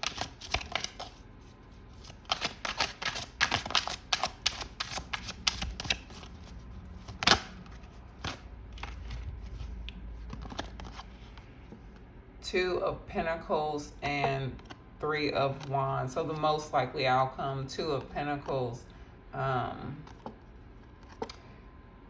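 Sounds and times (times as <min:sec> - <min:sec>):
cards being shuffled: 0:00.0 - 0:12.0, 0:14.0 - 0:14.8, 0:15.5 - 0:16.8, 0:20.0 - 0:21.4.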